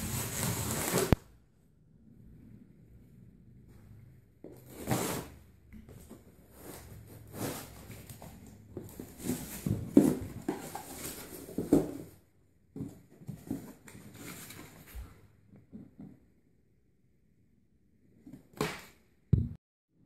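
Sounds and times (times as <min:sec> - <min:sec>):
cardboard box rustling and knocking: 0:05.9 - 0:14.4.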